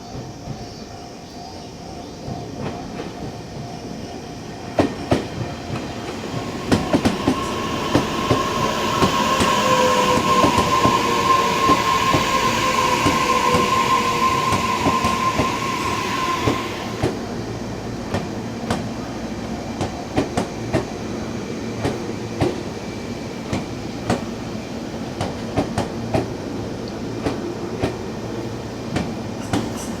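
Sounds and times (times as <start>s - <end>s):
train brakes squealing: 0.0s - 17.6s, 28.6s - 30.0s.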